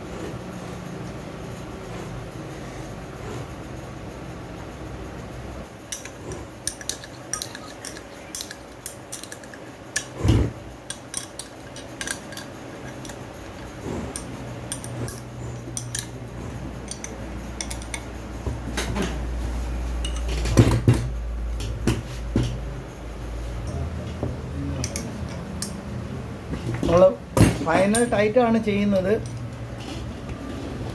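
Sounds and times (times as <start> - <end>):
metal parts clinking: 5.8 - 10.2, 10.8 - 18.4, 27.7 - 29.7.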